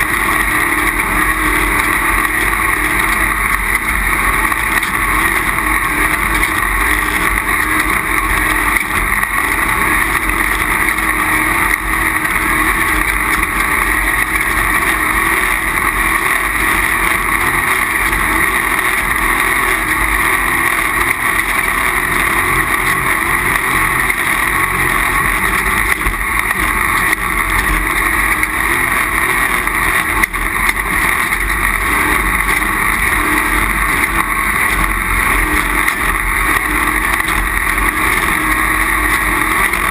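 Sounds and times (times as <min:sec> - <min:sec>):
loud rush of noise: 0:00.0 - 0:39.9
off-road vehicle engine running: 0:00.0 - 0:39.9.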